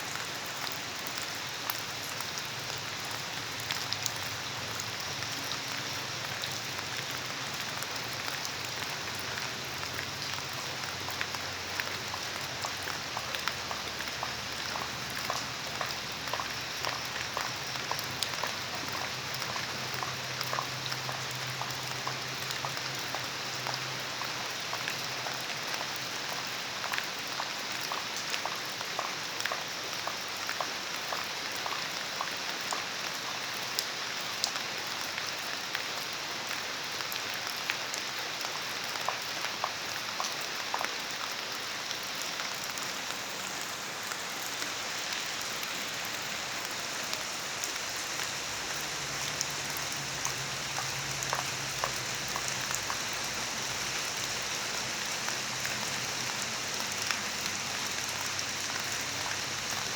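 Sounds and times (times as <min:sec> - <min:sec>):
rain drops on hard surface: 0:00.0 - 0:59.9.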